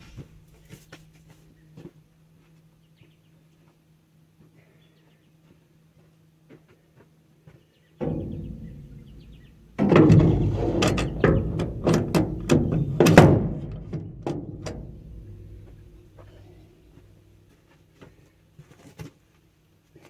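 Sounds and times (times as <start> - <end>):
single thump: 8.0 - 17.0
metal shaft clanking and ringing: 8.0 - 17.1.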